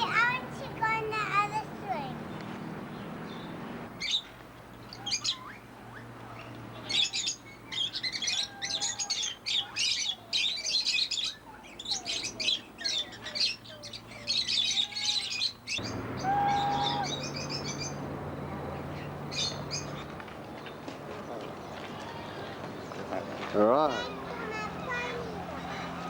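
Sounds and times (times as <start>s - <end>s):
small birds chirping: 0.0s - 26.0s
low whistled bird notes: 14.6s - 20.1s.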